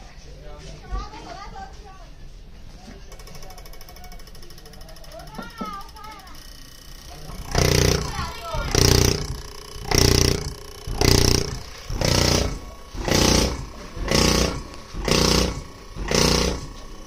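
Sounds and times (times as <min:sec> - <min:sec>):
rhythmic hissing buzzing bursts: 0:04.9 - 0:17.0.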